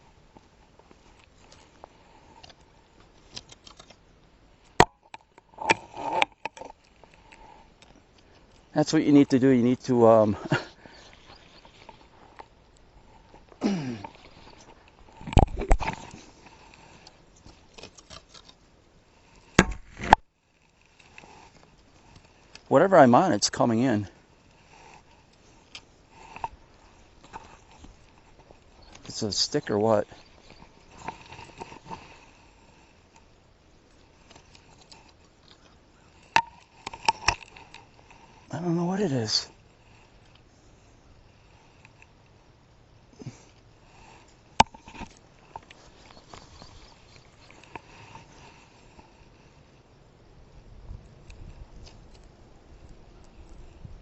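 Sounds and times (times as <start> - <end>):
sharp knocks and bumps: 19.6 - 20.2.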